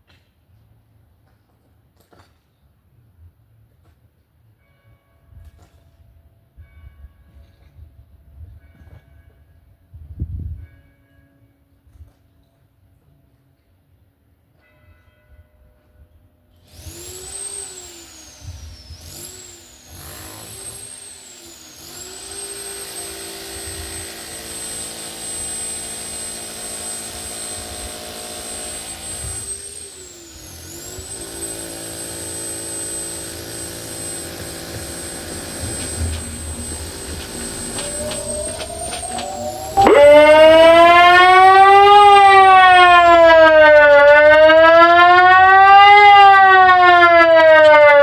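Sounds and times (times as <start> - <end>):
warning siren: 17.1 - 48.0.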